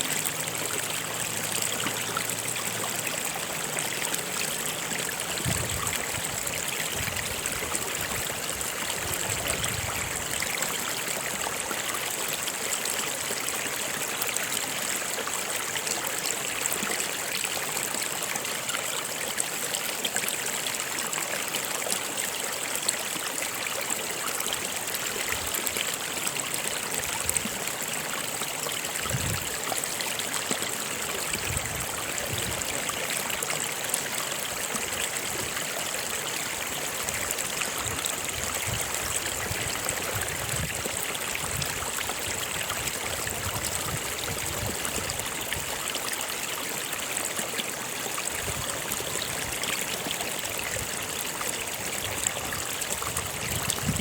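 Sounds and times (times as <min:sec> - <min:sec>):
stream water running: 0:00.0 - 0:54.0
low gurgles: 0:50.4 - 0:54.0.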